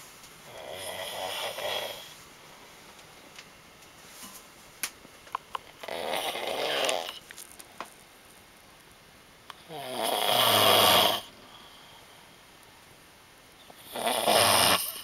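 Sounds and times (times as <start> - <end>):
man snoring: 0.5 - 2.1, 5.9 - 7.1, 9.6 - 11.3, 13.8 - 15.0.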